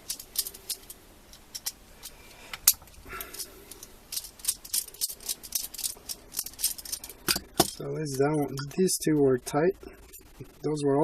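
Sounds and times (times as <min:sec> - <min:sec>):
ratchet parts clicking: 0:00.0 - 0:07.8.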